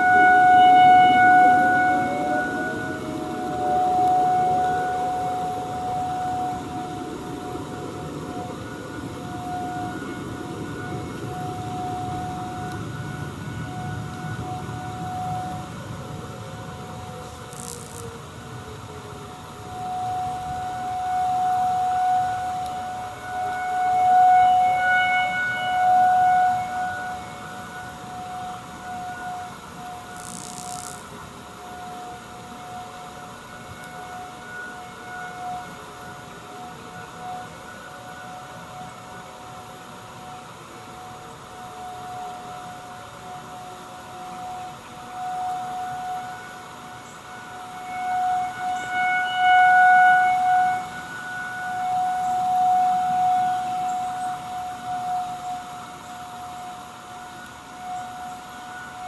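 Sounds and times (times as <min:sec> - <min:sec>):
lower siren winding down: 0:00.0 - 0:59.0
rotating warning siren tone: 0:00.0 - 0:59.0.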